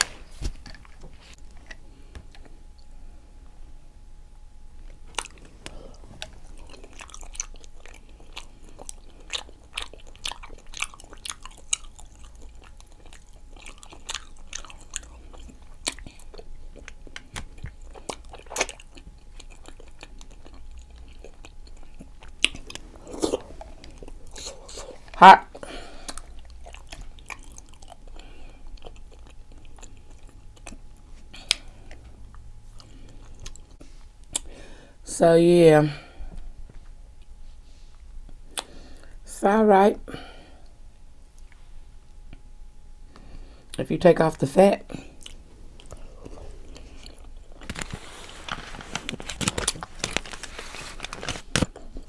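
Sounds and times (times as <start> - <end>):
person chewing: 0.0 - 3.0, 4.8 - 34.6, 38.2 - 39.2, 44.9 - 52.0.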